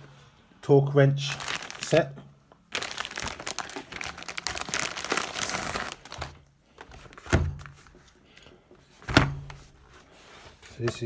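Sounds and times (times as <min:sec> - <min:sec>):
packaging crinkling: 0:01.2 - 0:08.0.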